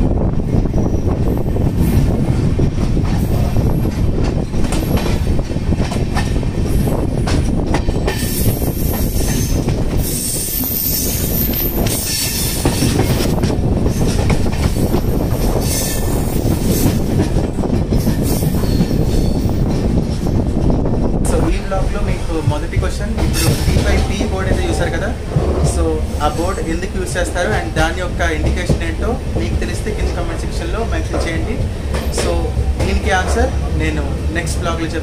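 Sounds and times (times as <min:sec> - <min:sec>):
train wheels rumbling on rails: 0:00.0 - 0:35.0
high-pitched wheel squeal: 0:08.2 - 0:12.9.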